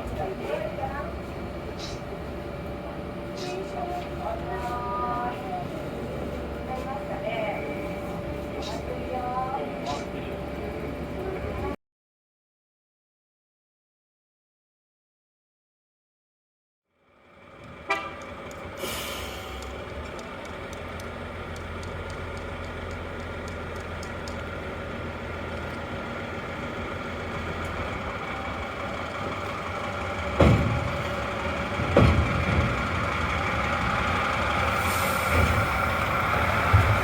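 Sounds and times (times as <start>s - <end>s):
diesel railcar running: 0.0s - 11.8s, 17.0s - 37.0s
short hiss: 18.8s - 19.6s
heavy knocks: 30.3s - 33.3s.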